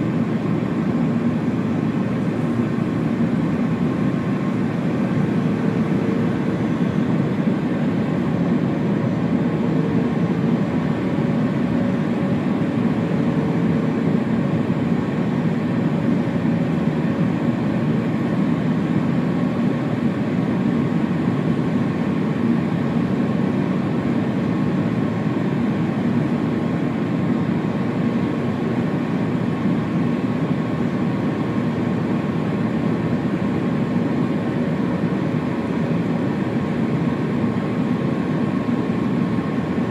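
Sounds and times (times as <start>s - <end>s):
airliner cabin engine rumble: 0.0s - 39.9s.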